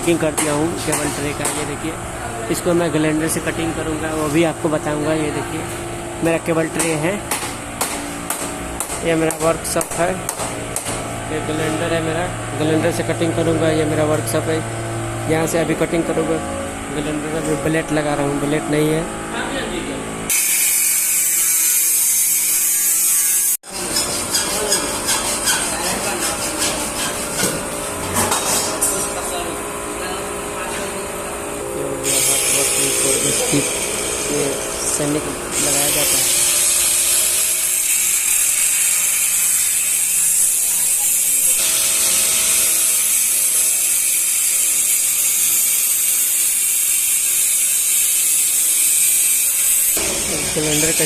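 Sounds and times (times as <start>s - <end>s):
angle grinder whining: 11.0s - 26.4s, 30.8s - 51.0s.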